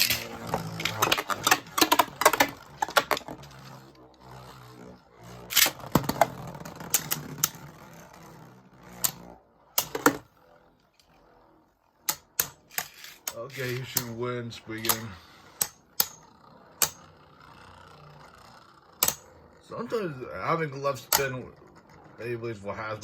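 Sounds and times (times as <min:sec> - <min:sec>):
spinning tops clacking together: 0:00.0 - 0:03.8, 0:05.2 - 0:10.3, 0:12.0 - 0:19.4
spinning tops whirring: 0:00.0 - 0:23.0.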